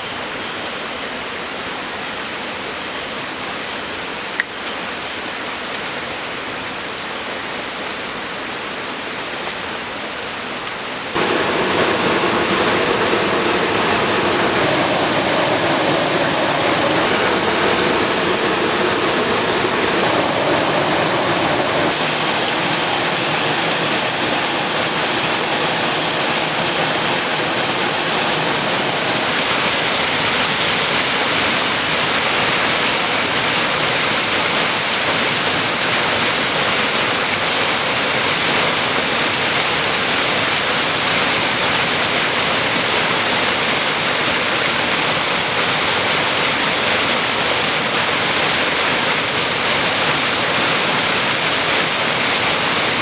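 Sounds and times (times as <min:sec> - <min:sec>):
waterfall rushing: 0:11.2 - 0:31.2.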